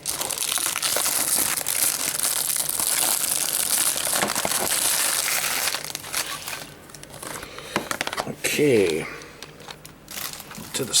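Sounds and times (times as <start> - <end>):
plastic shrink-wrap crinkling: 0.0 - 11.0.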